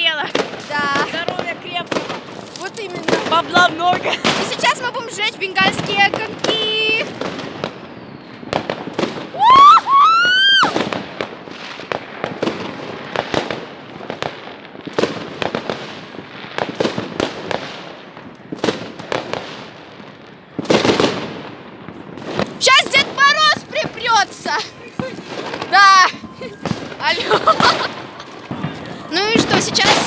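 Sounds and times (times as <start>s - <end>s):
fireworks pops and bangs: 0.0s - 30.0s
loud firework burst: 3.0s - 5.0s, 5.6s - 19.8s.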